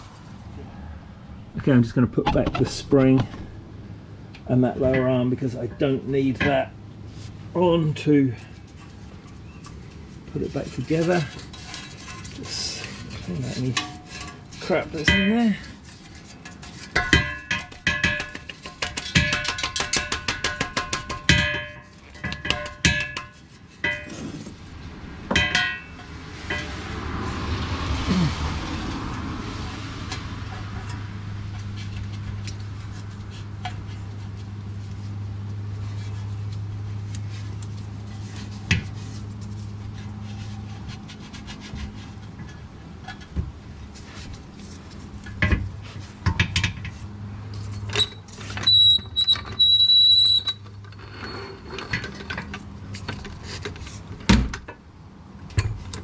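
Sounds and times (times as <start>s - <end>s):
steady low hum: 0.0s - 13.2s
metal tools clinking: 21.1s - 24.5s.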